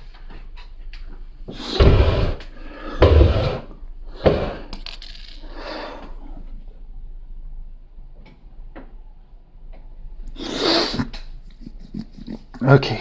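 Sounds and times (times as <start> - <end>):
heavier knocks: 1.7 - 2.4, 3.0 - 3.6.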